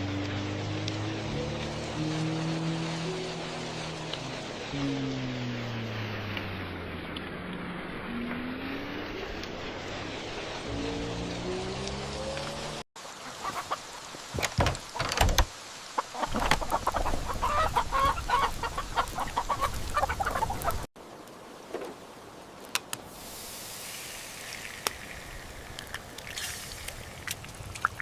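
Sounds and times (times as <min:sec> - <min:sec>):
rain hiss: 0:00.0 - 0:28.0
chickens clucking: 0:13.3 - 0:13.8, 0:16.0 - 0:20.9.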